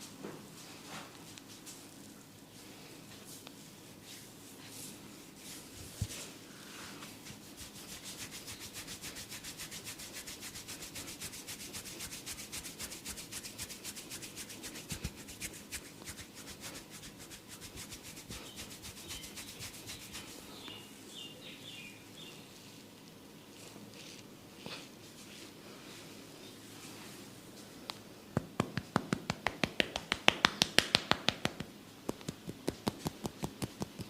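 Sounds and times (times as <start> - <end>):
rhythmic rubbing of head massage: 7.0 - 20.5, 28.4 - 34.0.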